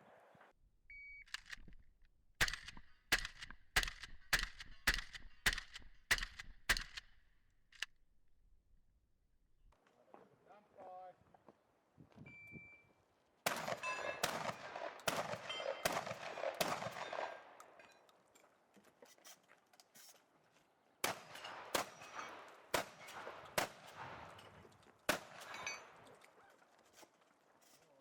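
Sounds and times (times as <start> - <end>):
shotgun firing: 2.4 - 7.2, 13.5 - 17.4, 21.0 - 24.3, 25.1 - 25.6.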